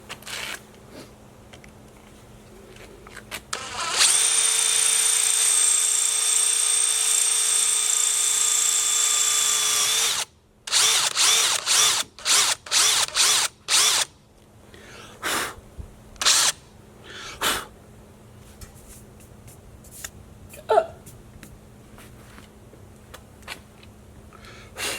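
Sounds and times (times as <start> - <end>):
power drill running: 3.6 - 14.1, 16.2 - 16.6
short drill trigger bursts: 3.6 - 14.1, 16.2 - 16.6.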